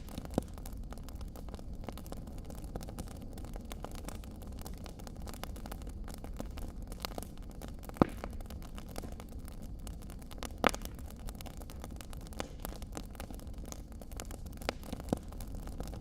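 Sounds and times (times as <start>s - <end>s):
loud pops of fire: 0.0s - 16.0s
wood fire crackling: 0.0s - 16.0s.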